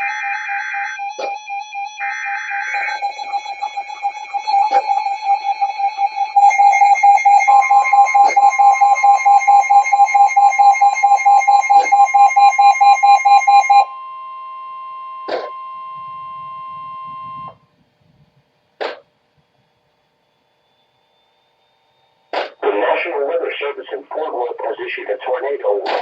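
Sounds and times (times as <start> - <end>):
fast-pulsing alarm beep: 0.0 - 14.0, 14.6 - 17.6.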